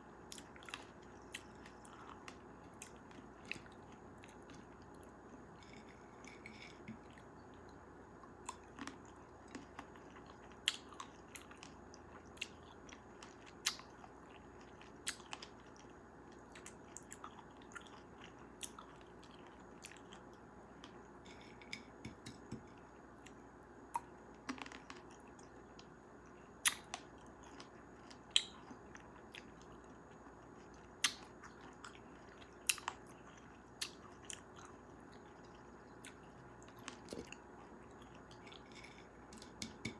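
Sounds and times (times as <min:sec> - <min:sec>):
chewing and biting cherries: 0:26.6 - 0:39.9.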